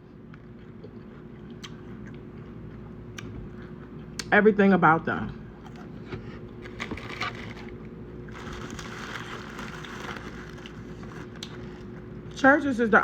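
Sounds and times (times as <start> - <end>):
crunching crispy fried chicken: 6.6 - 12.1.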